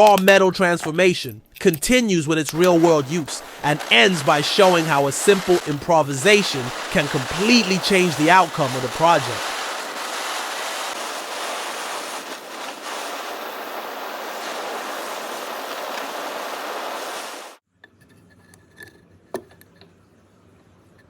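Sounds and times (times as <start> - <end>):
loud rushing hiss: 2.5 - 17.6.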